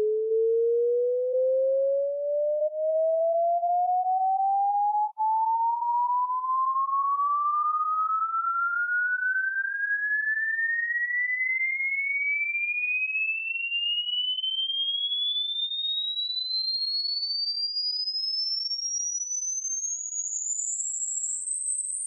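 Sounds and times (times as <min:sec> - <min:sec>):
sine tone gliding upward: 0:00.0 - 0:17.2.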